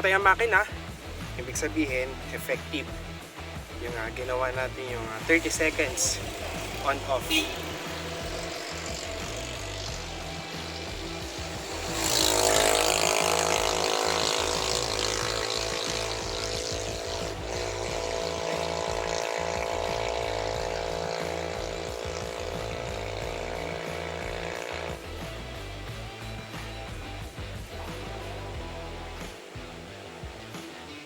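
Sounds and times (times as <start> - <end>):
diesel engine idling: 5.3 - 25.7.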